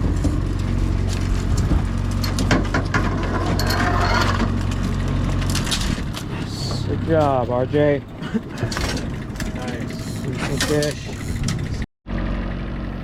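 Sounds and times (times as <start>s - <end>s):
knocks and clattering on boat: 0.0s - 3.6s, 8.1s - 11.8s
boat engine running: 0.0s - 13.0s.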